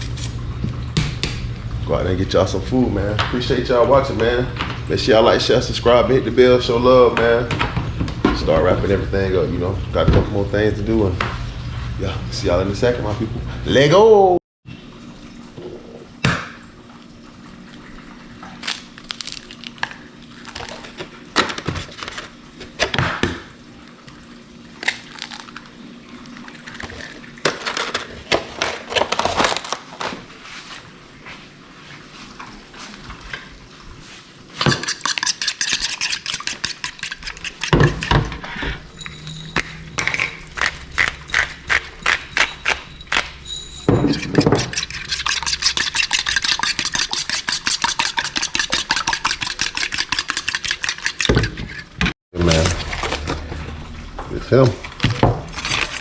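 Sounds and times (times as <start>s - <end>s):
pans and dishes clattering: 34.6s - 45.6s.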